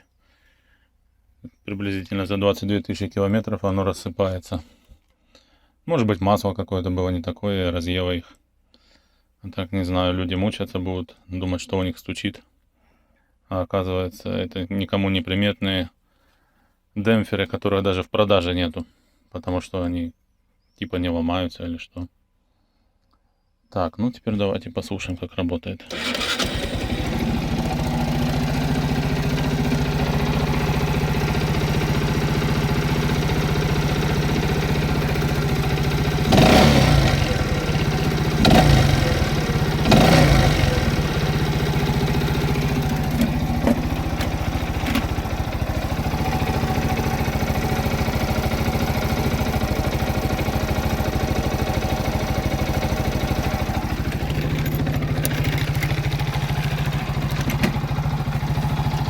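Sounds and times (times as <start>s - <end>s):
moped engine idling and revving: 25.9s - 59.0s.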